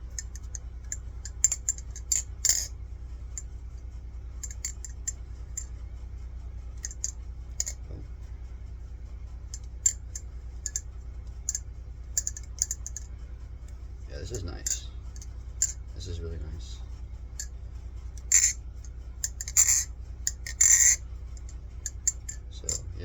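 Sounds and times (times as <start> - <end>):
butterfly knife metallic clicks: 0.1 - 2.7, 12.2 - 13.1, 18.2 - 18.6, 19.2 - 22.9.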